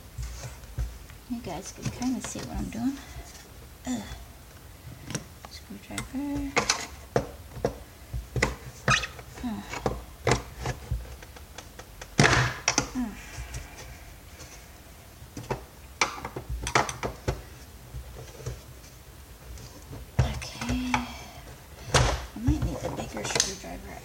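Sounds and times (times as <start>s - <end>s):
plastic parts clicking and knocking: 4.5s - 13.8s, 15.3s - 24.0s.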